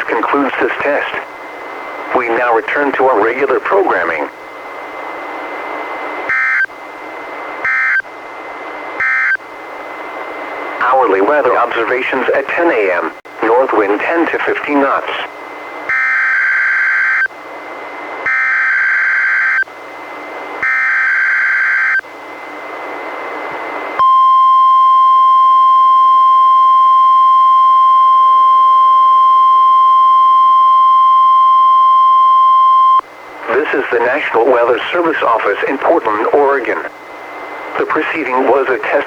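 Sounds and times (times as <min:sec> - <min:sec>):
receiver hiss: 0:00.0 - 0:08.1, 0:09.5 - 0:18.3, 0:19.2 - 0:39.0
steady warning alarm tone: 0:06.2 - 0:06.8, 0:07.6 - 0:08.1, 0:09.0 - 0:09.5, 0:15.9 - 0:17.4, 0:18.2 - 0:19.7, 0:20.6 - 0:22.5, 0:24.0 - 0:33.0.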